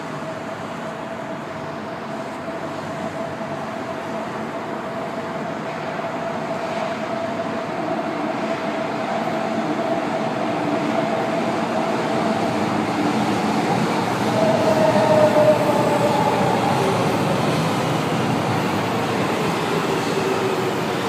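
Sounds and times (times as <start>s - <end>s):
train rushing with high whine: 0.0s - 21.0s.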